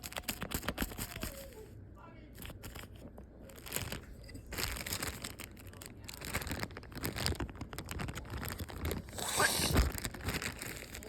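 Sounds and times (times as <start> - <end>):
slime squelching and crackling: 2.4 - 11.0.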